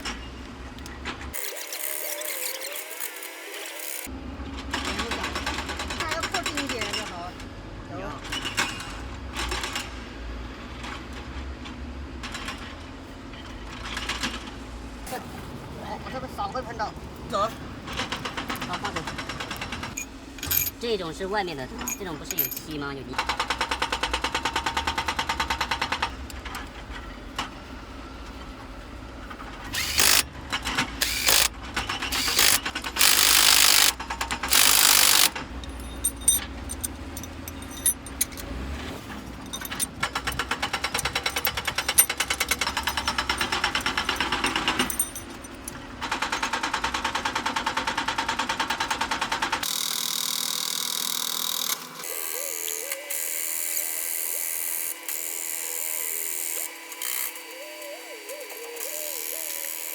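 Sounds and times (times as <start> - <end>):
power tools rattling: 17.8 - 26.2, 29.7 - 48.0
metal parts clanking: 19.3 - 23.3, 29.8 - 46.5.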